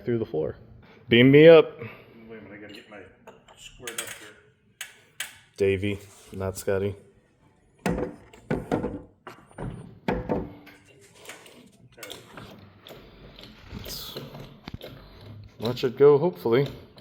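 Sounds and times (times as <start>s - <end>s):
jack clunking and knocking: 7.8s - 10.8s.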